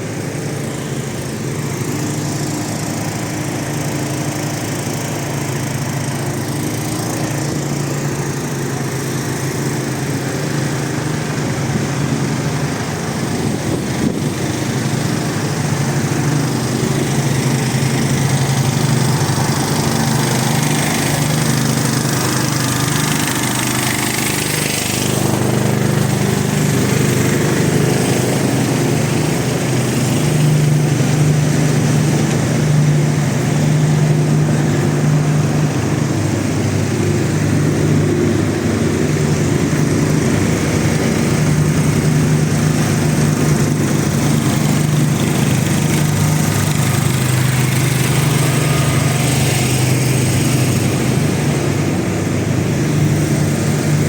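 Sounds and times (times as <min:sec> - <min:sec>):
portable generators running: 0:00.0 - 0:54.0.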